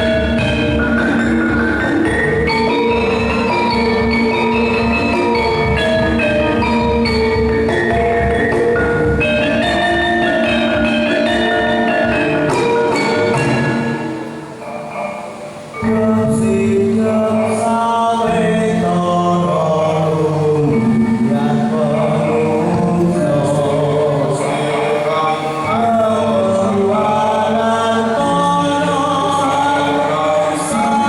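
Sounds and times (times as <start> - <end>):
tuned mallet percussion melody: 0.0 - 31.0
voices singing: 14.6 - 31.0.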